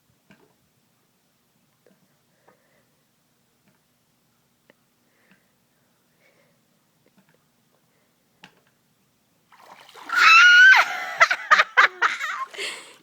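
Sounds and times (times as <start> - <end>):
water splashing: 9.5 - 13.0
loud high-pitched yell: 10.1 - 12.3.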